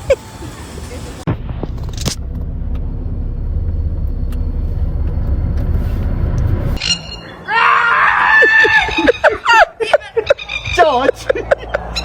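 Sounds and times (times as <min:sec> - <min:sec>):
steady low rumble: 0:00.0 - 0:06.9.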